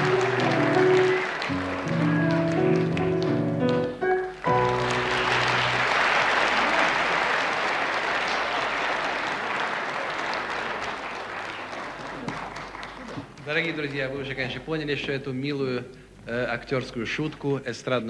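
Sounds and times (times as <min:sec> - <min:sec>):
audience applause: 0:00.0 - 0:14.1.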